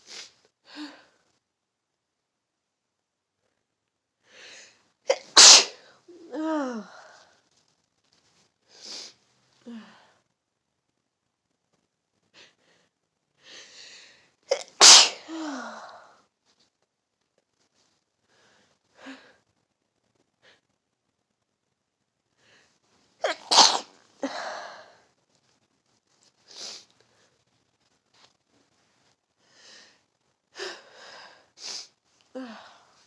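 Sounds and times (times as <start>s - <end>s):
person sneezing: 5.1s - 5.8s, 14.5s - 15.7s, 23.2s - 24.4s
sniffs and breaths: 8.3s - 9.2s, 26.3s - 27.4s, 30.6s - 32.0s.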